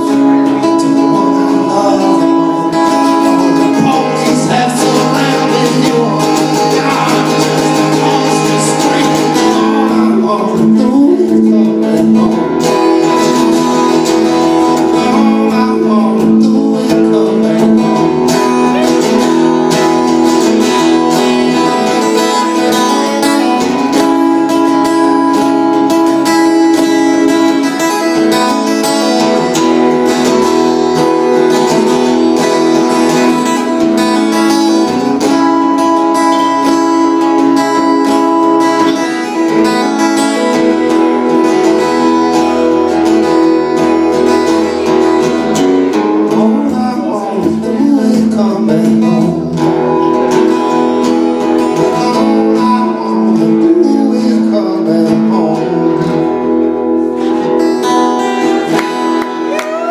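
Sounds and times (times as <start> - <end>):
acoustic guitar strumming: 0.0 - 59.9.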